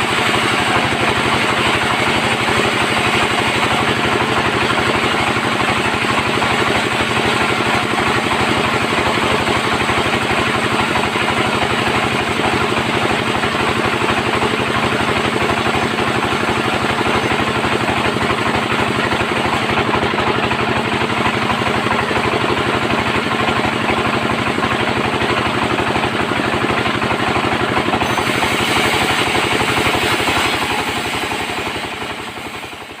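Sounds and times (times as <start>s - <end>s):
bandsaw mill humming: 0.0s - 33.0s.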